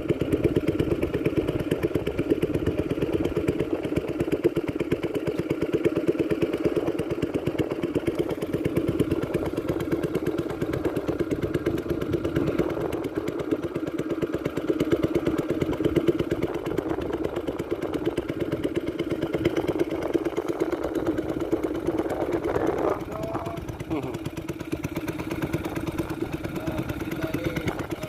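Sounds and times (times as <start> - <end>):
boat engine puttering: 0.0 - 28.0.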